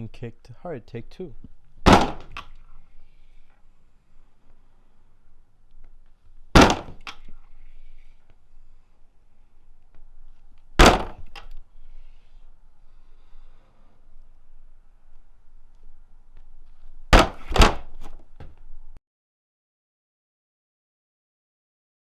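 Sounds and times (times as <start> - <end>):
door kicked hard: 1.8 - 2.5, 6.5 - 7.2, 10.8 - 11.4, 17.1 - 18.5.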